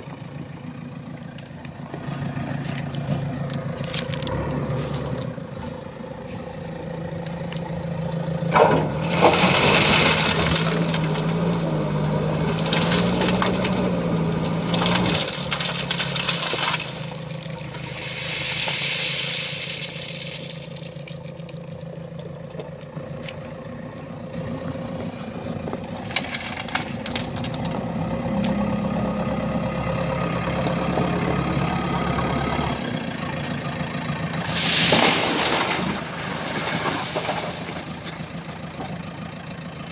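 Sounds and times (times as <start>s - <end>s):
diesel engine revving: 0.0s - 39.9s
scrap metal clanking: 8.5s - 21.5s, 25.7s - 27.8s, 34.4s - 39.0s
rattling rushes: 8.5s - 22.6s, 24.8s - 27.9s, 34.3s - 39.0s.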